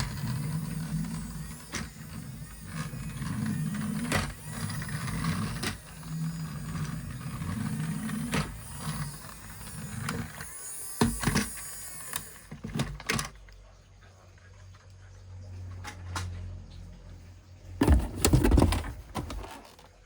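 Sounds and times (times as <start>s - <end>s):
small motor whirring: 0.0s - 13.2s.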